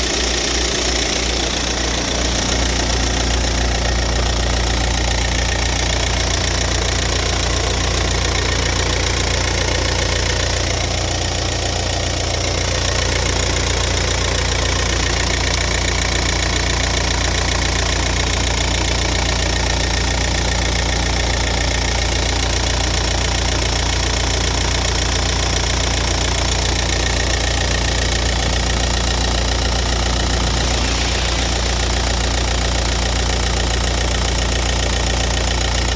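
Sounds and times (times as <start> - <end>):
diesel engine idling with knocking tick: 0.0 - 35.9.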